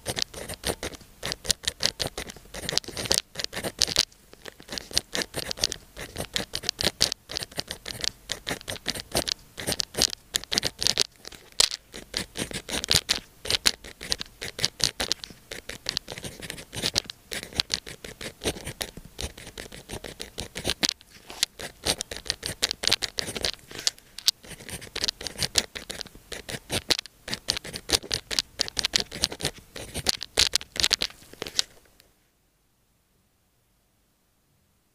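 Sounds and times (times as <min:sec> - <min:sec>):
pen scratching on paper: 0:00.0 - 0:31.5.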